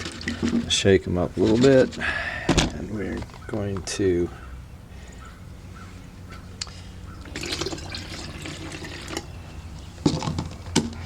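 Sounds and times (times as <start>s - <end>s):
water sloshing and splashing: 0.0s - 3.2s, 6.6s - 11.0s.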